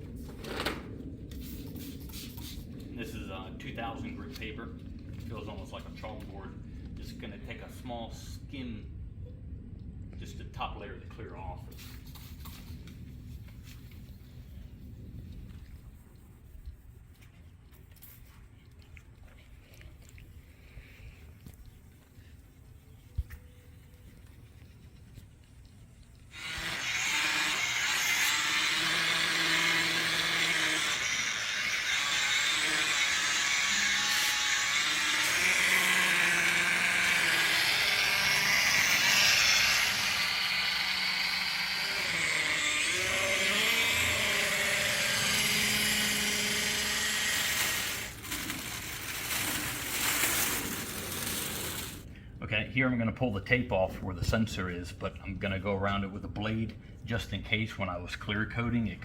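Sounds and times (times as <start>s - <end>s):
electric polisher whirring: 26.3s - 52.0s.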